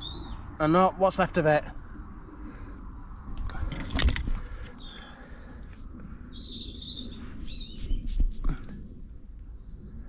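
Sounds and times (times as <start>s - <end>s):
small birds chirping: 0.0s - 10.0s
rustles and thumps: 3.5s - 4.6s.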